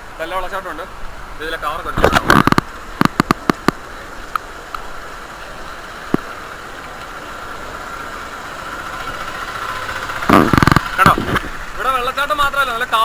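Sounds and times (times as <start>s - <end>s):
rain: 0.0s - 13.0s
sharp taps: 2.0s - 4.9s
wind buffeting microphone: 10.1s - 11.8s.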